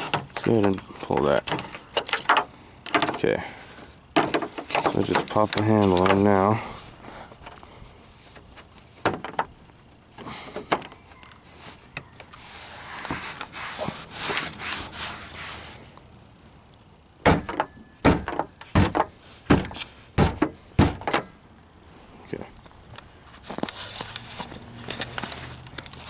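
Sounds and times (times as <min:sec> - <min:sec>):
door handle parts clicking and scraping: 0:00.0 - 0:06.5, 0:17.3 - 0:21.4
loud sharp knocks: 0:17.2 - 0:21.3.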